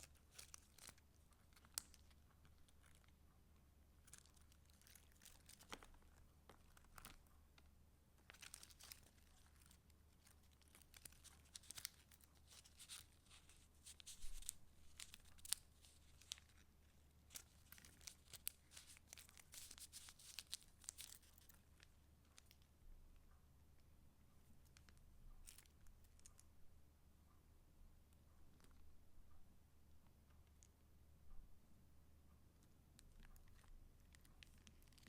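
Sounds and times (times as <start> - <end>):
paper rustling and crinkling: 0.0 - 3.2, 4.1 - 7.3, 8.2 - 22.5, 33.3 - 35.0
sharp paper flicks: 10.8 - 16.4.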